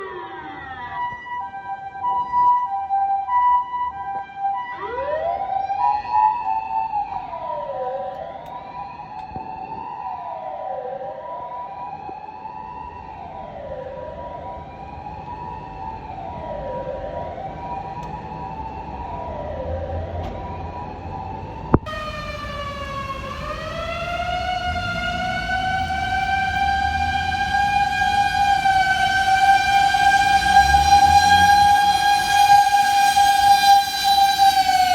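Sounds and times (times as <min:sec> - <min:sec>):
siren climbing in pitch: 0:00.0 - 0:34.9
siren wailing up and down: 0:00.0 - 0:34.9
two-tone siren: 0:00.0 - 0:34.9
low vehicle rumble: 0:14.2 - 0:34.9.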